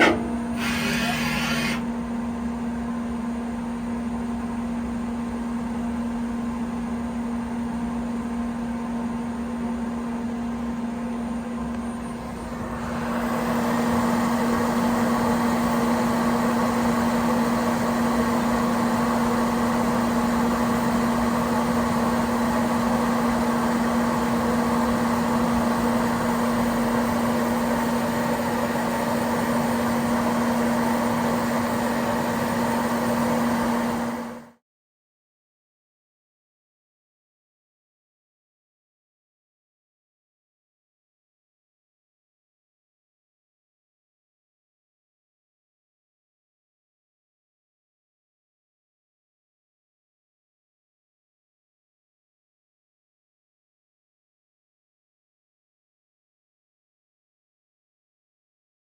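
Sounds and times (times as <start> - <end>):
machining noise: 0.0 - 1.8
lathe hum: 0.0 - 1.9.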